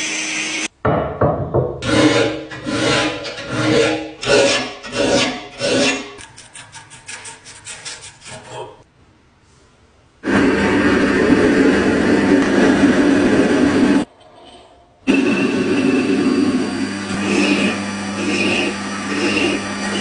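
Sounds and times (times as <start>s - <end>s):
hand tool rasping: 1.8s - 8.7s, 17.1s - 20.0s.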